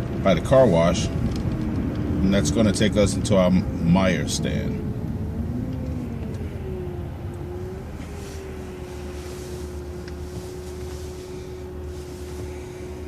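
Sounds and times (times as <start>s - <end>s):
bus drivetrain rumble and whine: 0.0s - 13.0s
soft air hiss: 8.0s - 13.0s.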